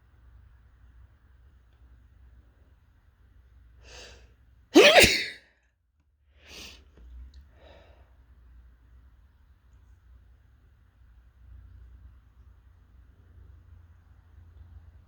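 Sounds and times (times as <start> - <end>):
person breathing: 3.8 - 4.3, 6.4 - 6.9, 7.5 - 8.2
person sneezing: 4.8 - 5.4.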